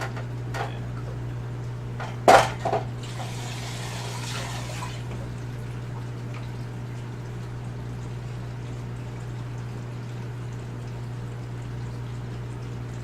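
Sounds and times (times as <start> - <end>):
steady low hum: 0.0 - 13.0
water splashing and trickling: 3.0 - 13.0.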